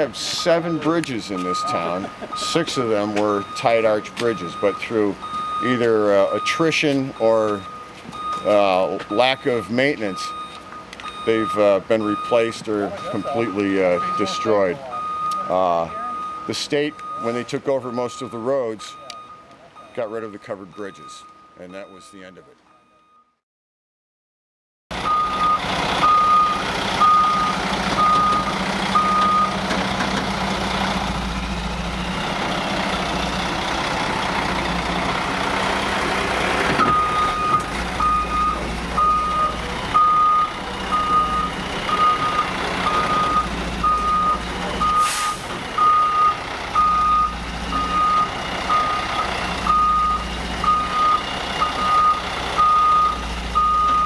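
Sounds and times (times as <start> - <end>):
heavy vehicle engine running: 0.0 - 18.4, 24.9 - 54.0
reversing alarm beeping: 0.0 - 23.4, 25.0 - 29.6, 36.8 - 54.0
short hiss: 45.0 - 45.5.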